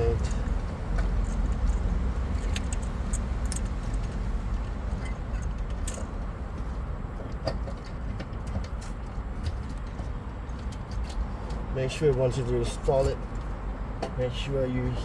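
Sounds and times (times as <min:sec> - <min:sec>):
steady low rumble: 0:00.0 - 0:07.4.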